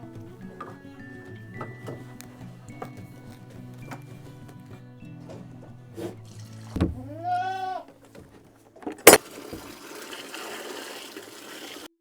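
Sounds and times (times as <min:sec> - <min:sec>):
dull thump: 0:06.7 - 0:07.1
goat bleating: 0:07.0 - 0:08.0.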